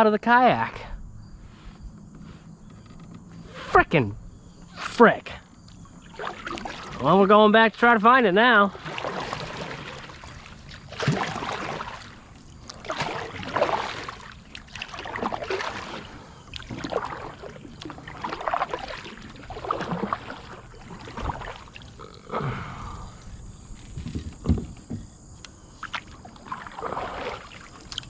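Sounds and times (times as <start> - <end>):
paddle strokes splashing in water: 4.6 - 7.9, 8.5 - 22.2, 25.7 - 28.0.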